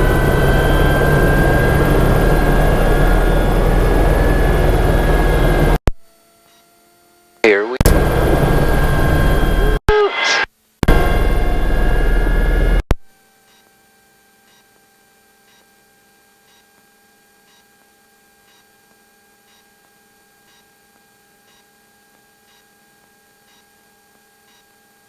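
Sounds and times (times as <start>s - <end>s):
helicopter noise: 0.0s - 5.8s, 7.4s - 12.8s.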